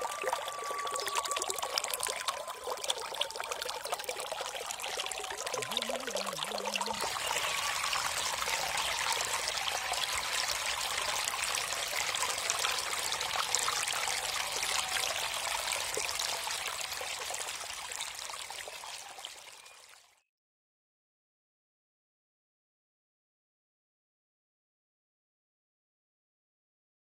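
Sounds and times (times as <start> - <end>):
water trickling in a stream: 0.0 - 20.2.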